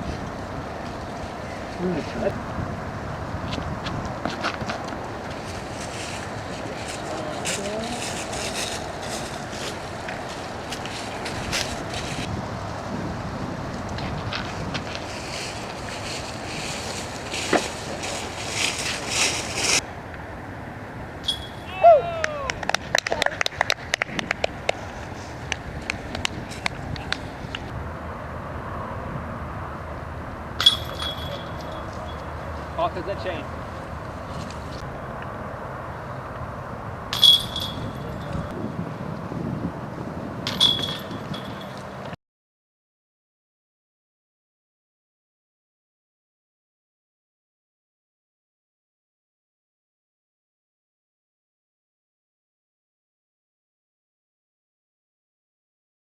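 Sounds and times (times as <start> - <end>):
wind buffeting microphone: 0.0 - 42.2
discs striking metal chain basket: 21.2 - 21.7, 30.6 - 32.3, 37.1 - 38.5, 40.4 - 41.9.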